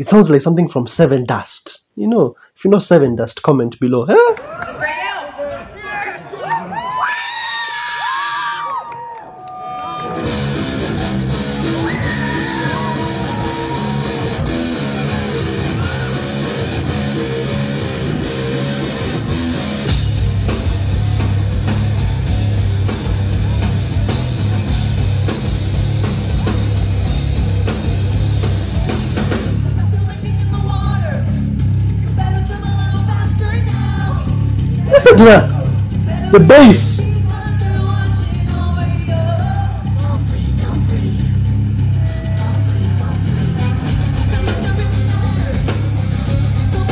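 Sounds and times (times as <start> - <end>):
distorted guitar riff: 10.0 - 29.6
heavy rock band playing: 10.1 - 37.1, 39.8 - 46.9.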